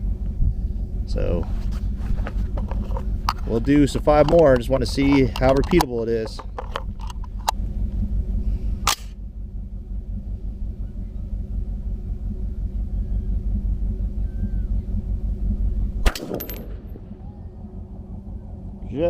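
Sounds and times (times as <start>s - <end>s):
steady low rumble: 0.0s - 19.0s
rifle shots: 16.0s - 16.9s.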